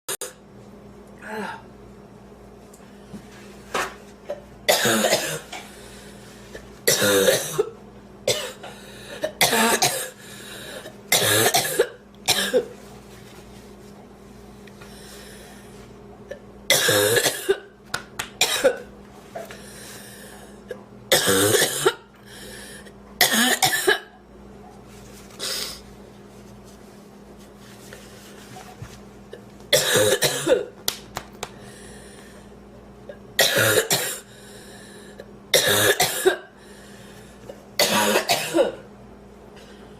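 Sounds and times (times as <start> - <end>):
woman coughing: 4.3 - 5.6, 6.9 - 10.2, 11.1 - 12.7, 16.7 - 17.7, 18.4 - 18.8, 21.1 - 22.1, 23.2 - 24.1, 29.7 - 30.7, 33.4 - 34.3, 35.5 - 36.5, 37.8 - 38.8.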